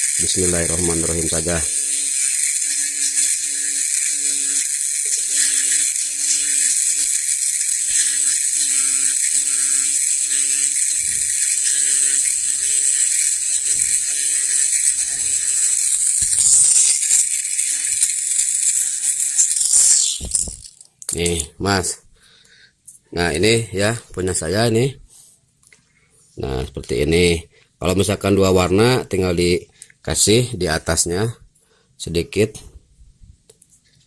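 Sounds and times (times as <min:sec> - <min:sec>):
engraving machine hissing: 0:00.0 - 0:20.7.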